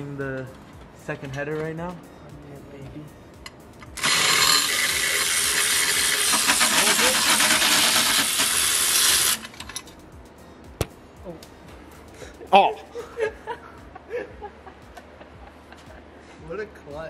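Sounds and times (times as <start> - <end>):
fast metallic ratchet clicking: 3.8 - 9.9
pneumatic air ratchet hissing: 4.0 - 9.9.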